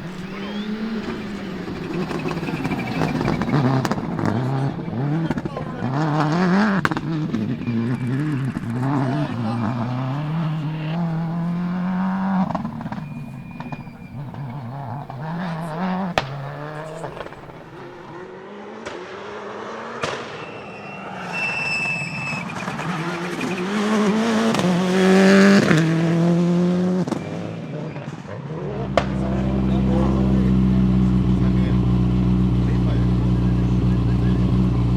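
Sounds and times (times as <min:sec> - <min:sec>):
rally car engine revving: 0:00.0 - 0:34.9.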